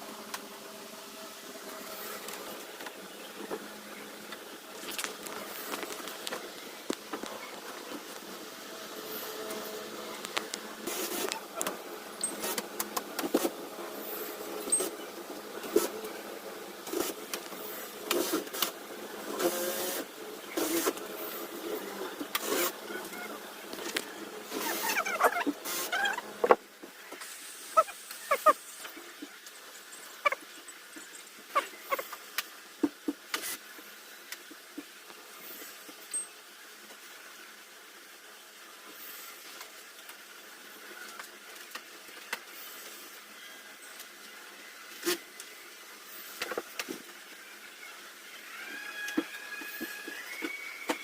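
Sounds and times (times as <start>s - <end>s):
faint clicks of small parts: 41.0s - 43.0s.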